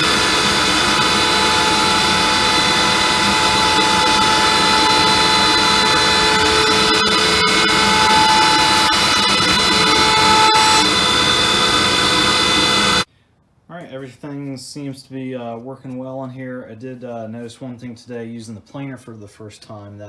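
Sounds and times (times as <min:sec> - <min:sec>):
planer machine running: 0:00.0 - 0:13.0
high whining tones: 0:00.0 - 0:13.1.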